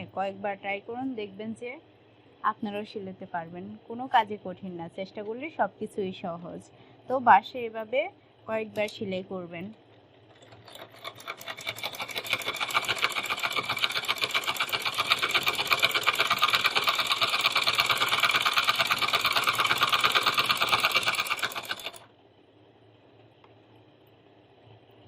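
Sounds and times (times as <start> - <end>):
treadle sewing machine clatter: 10.3 - 22.1.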